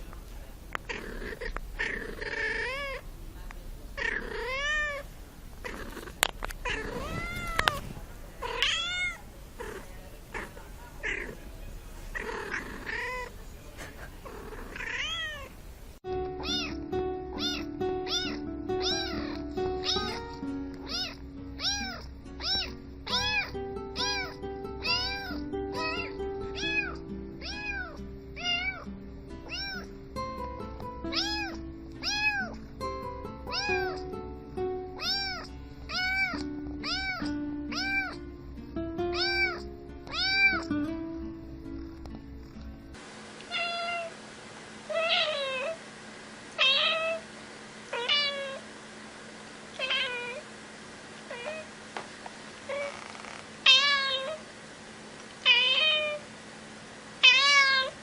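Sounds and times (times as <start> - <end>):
cat meowing: 0.9 - 3.0, 4.0 - 7.8, 8.4 - 11.4, 12.2 - 13.4, 14.4 - 15.5, 16.4 - 16.8, 17.4 - 29.9, 31.1 - 32.6, 33.5 - 34.1, 35.0 - 38.2, 39.1 - 40.7, 43.5 - 44.2, 44.9 - 45.8, 46.6 - 47.2, 47.9 - 48.6, 49.8 - 50.4, 51.3 - 51.7, 52.7 - 54.4, 55.4 - 56.2, 57.2 - 58.0
background music with low beat: 16.1 - 21.5, 28.9 - 32.1.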